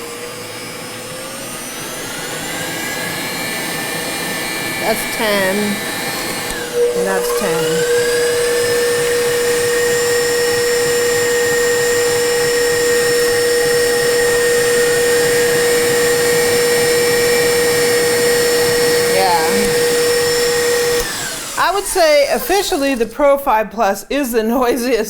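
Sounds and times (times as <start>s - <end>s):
stand mixers whining: 0.0s - 23.4s.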